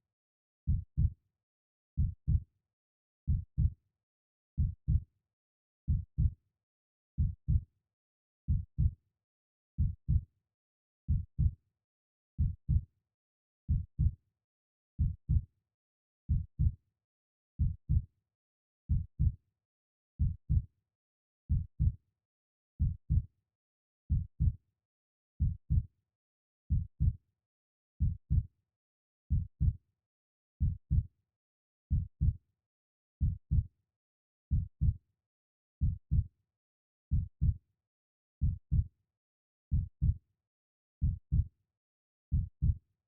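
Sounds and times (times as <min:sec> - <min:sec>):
slow heartbeat: 0:02.0 - 0:02.4, 0:03.3 - 0:03.7, 0:04.6 - 0:05.0, 0:07.2 - 0:07.6, 0:09.8 - 0:10.2, 0:12.4 - 0:12.8, 0:15.0 - 0:15.4, 0:16.3 - 0:16.7, 0:17.6 - 0:18.0, 0:18.9 - 0:19.4, 0:20.2 - 0:20.6, 0:21.5 - 0:22.0, 0:24.1 - 0:24.6, 0:25.4 - 0:25.9, 0:26.7 - 0:27.2, 0:28.0 - 0:28.4, 0:29.3 - 0:29.8, 0:30.6 - 0:31.1, 0:31.9 - 0:32.4, 0:33.2 - 0:33.6, 0:34.5 - 0:35.0, 0:35.8 - 0:36.3, 0:37.1 - 0:37.6, 0:38.4 - 0:38.9, 0:39.7 - 0:40.2, 0:41.0 - 0:41.5, 0:42.3 - 0:42.8.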